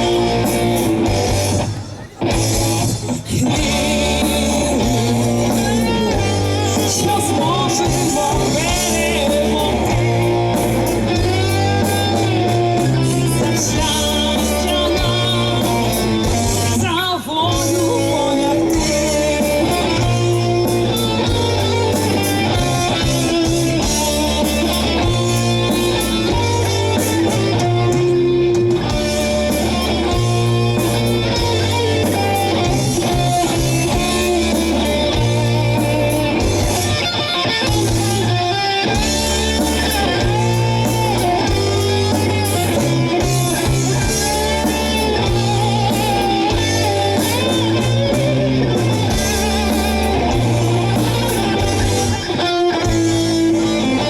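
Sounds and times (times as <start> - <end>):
bass line: 0.0 - 54.0
distorted guitars: 0.0 - 54.0
rock band playing live: 0.0 - 54.0
person singing: 2.8 - 54.0.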